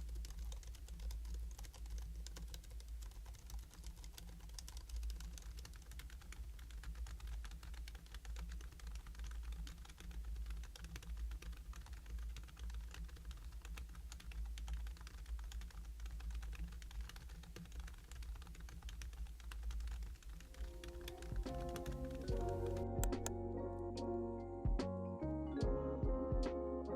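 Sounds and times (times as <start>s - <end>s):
fast typing on keyboard: 0.0s - 23.3s
music: 20.6s - 26.9s.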